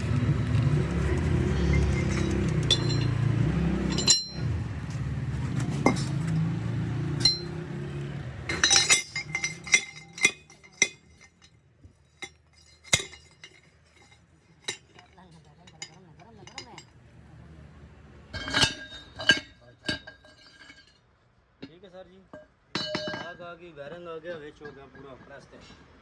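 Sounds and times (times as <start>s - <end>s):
metal tools clinking: 1.0s - 4.6s, 5.8s - 6.4s, 7.2s - 7.6s, 8.5s - 16.9s, 18.4s - 21.0s, 21.6s - 23.4s.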